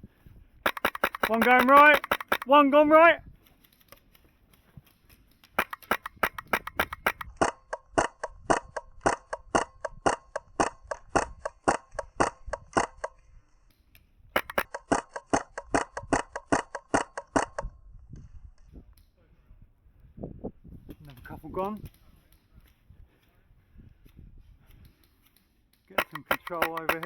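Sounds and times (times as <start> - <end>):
airsoft rifle firing rapid shots: 0.6 - 2.9, 5.6 - 13.1, 14.4 - 17.7, 26.0 - 27.0.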